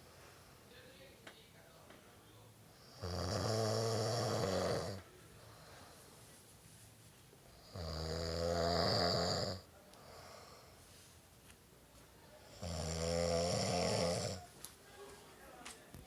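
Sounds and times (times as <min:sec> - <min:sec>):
quiet breathing: 0:00.0 - 0:01.1, 0:04.4 - 0:07.9, 0:09.3 - 0:11.5
man snoring: 0:02.8 - 0:05.0, 0:07.6 - 0:10.6, 0:12.6 - 0:14.4.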